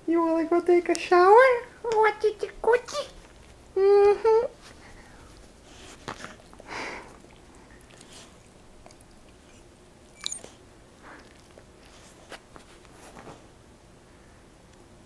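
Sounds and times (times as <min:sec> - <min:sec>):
dog chewing crunches: 0:05.2 - 0:13.0.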